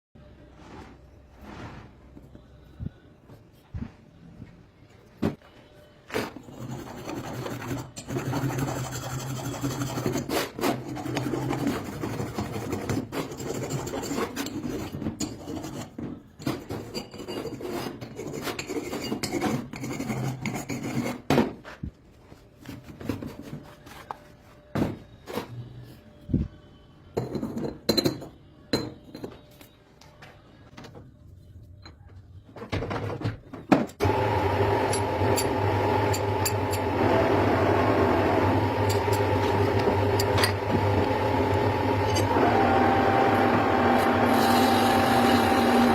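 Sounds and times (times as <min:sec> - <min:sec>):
hand tool rasping and scraping: 0:06.3 - 0:21.2.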